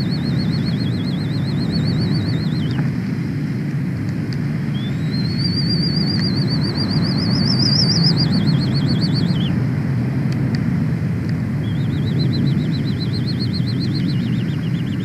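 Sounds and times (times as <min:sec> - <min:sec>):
high warbling whistle: 0:00.0 - 0:02.8, 0:04.7 - 0:09.5, 0:11.6 - 0:15.0
steady low rumble: 0:00.0 - 0:15.0.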